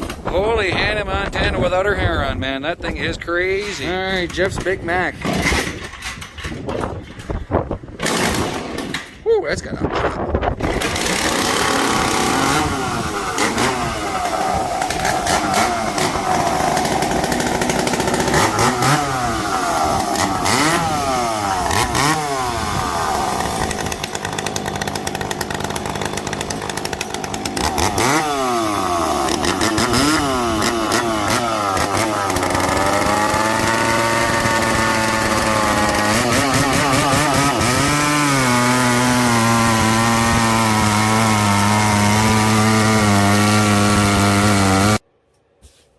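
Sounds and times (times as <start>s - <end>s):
two-stroke chainsaw revving: 5.2s - 5.8s, 8.0s - 9.0s, 10.6s - 45.0s.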